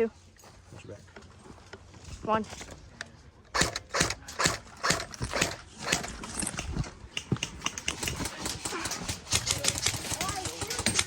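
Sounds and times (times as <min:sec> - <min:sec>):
airsoft guns firing: 0:03.6 - 0:06.2.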